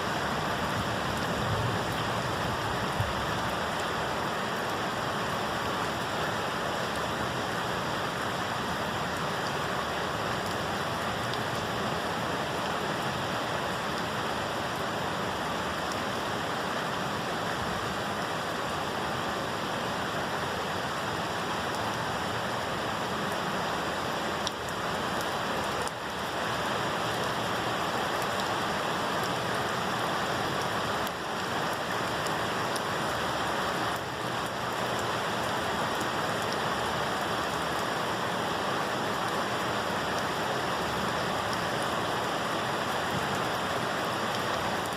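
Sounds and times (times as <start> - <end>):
heavy rain falling: 0.0 - 44.9.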